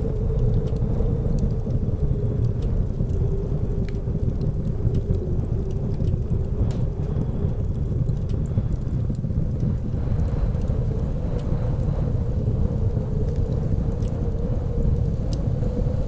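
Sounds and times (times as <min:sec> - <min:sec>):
blizzard wind howling: 0:00.0 - 0:16.0
wood fire crackling: 0:00.0 - 0:16.0.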